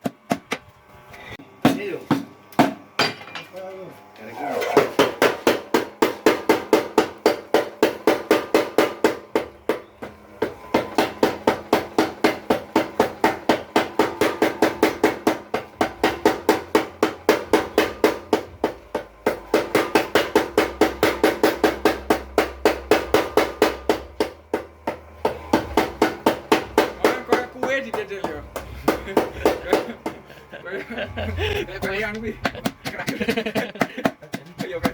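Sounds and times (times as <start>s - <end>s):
power hammer pounding metal: 1.6s - 3.4s, 4.7s - 34.9s
low hum: 9.4s - 33.6s.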